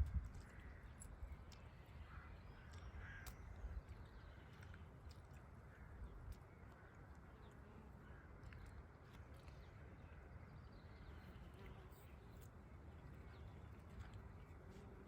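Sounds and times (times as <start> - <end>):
faint bird calls: 0.4 - 4.8.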